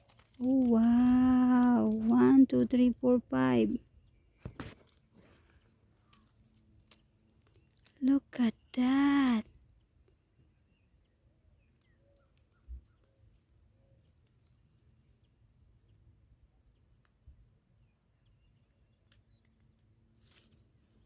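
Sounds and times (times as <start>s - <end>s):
faint high-pitched bird chirps: 5.5s - 14.3s.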